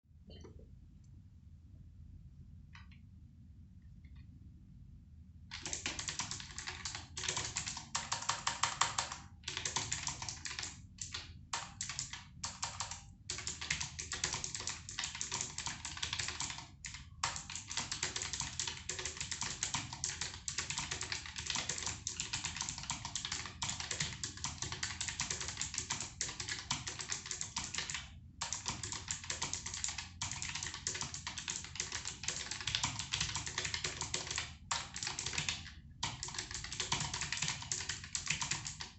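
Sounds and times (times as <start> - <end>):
mechanical keyboard typing: 5.5 - 38.9.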